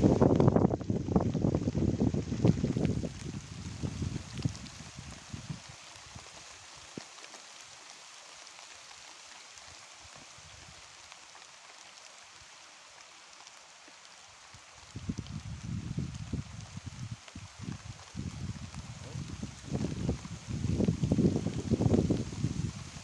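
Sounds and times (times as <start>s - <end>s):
rain falling: 0.0s - 23.0s.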